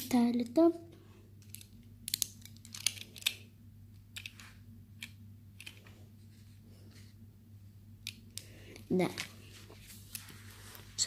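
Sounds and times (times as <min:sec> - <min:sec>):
faint steady hum: 0:00.0 - 0:11.0
plastic bricks clicking: 0:01.4 - 0:03.4.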